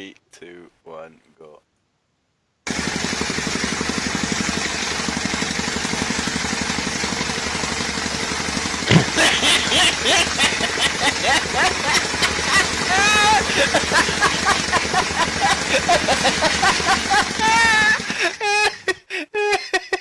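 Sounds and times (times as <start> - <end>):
tamping rammer pounding: 2.7 - 18.7
voices: 8.9 - 18.4.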